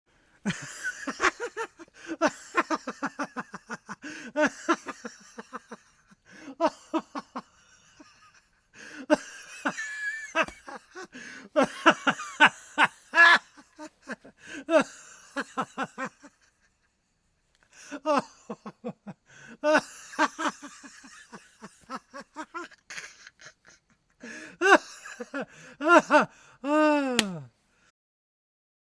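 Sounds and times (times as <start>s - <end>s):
man laughing heartily: 0.4s - 17.0s, 17.7s - 27.5s
breathy wheezes and in-breaths: 1.8s - 2.4s, 3.9s - 4.5s, 6.0s - 6.6s, 8.7s - 9.6s, 10.9s - 11.6s, 14.0s - 15.4s, 19.2s - 19.7s, 22.8s - 27.9s.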